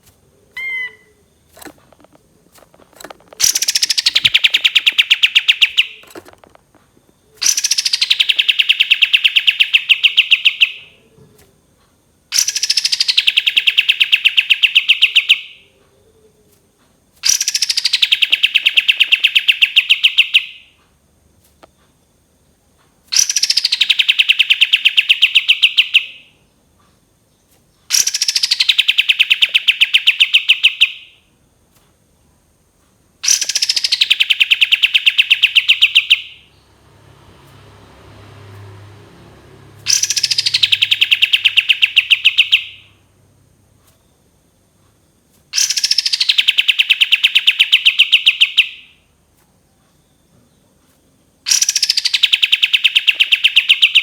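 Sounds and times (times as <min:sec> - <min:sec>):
songbird trilling: 0:00.5 - 0:02.1, 0:02.9 - 0:06.4, 0:07.4 - 0:10.9, 0:12.4 - 0:15.6, 0:17.2 - 0:20.6, 0:27.9 - 0:31.1, 0:33.2 - 0:36.6, 0:39.9 - 0:43.0, 0:45.6 - 0:48.9, 0:51.5 - 0:54.0.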